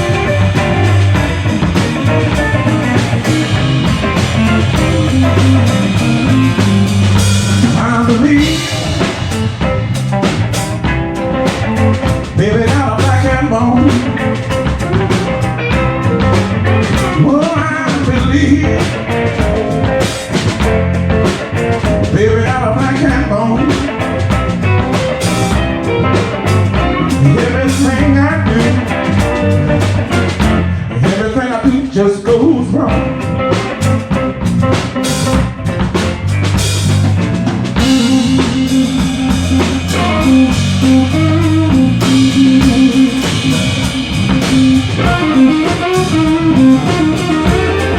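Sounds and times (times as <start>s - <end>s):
bass guitar: 0.0s - 47.9s
drum kit: 0.0s - 47.9s
electric guitar: 0.0s - 47.9s.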